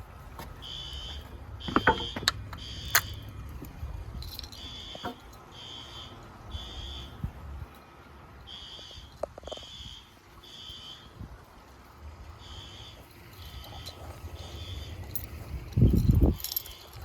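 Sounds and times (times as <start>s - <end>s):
fire alarm high beeps: 0.6s - 3.2s, 4.6s - 7.2s, 8.5s - 11.1s, 12.4s - 15.0s
knocks: 1.7s - 2.3s.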